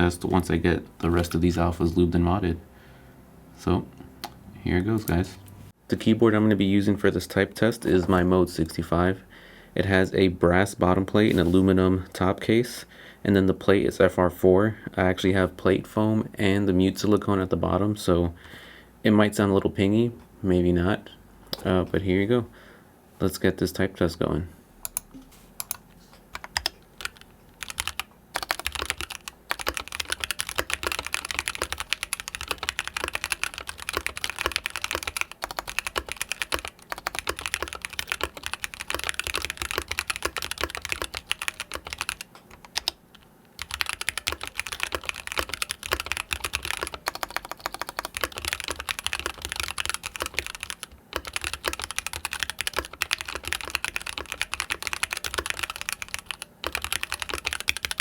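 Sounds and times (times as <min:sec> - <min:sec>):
mechanical keyboard typing: 0:26.4 - 0:58.0.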